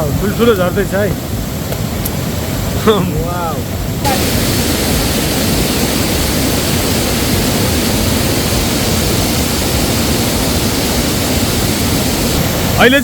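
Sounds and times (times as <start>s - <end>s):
stream water rushing: 0.0s - 13.0s.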